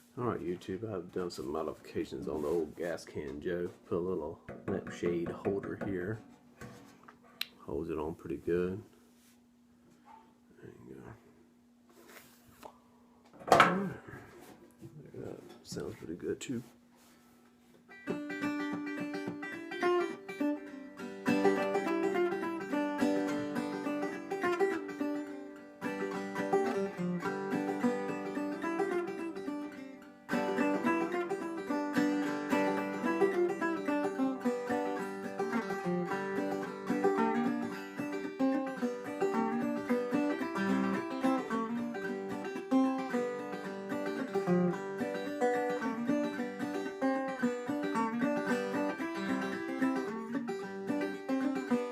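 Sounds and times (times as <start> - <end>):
banjo picking: 0.0 - 6.9, 17.8 - 51.9.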